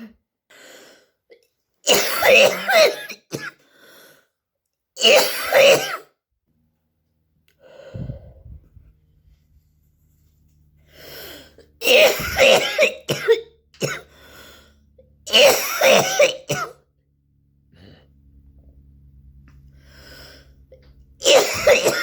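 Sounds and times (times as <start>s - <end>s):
woman coughing: 0.0s - 0.2s, 1.9s - 3.6s, 5.0s - 6.1s, 11.8s - 14.1s, 15.3s - 16.8s, 21.2s - 22.0s
quiet breaths: 14.0s - 15.0s.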